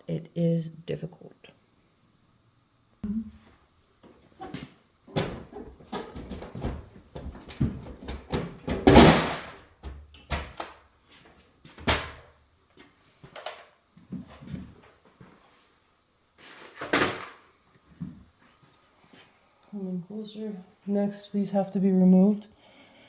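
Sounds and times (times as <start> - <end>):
plastic shelving knocking and scraping: 4.4 - 10.8.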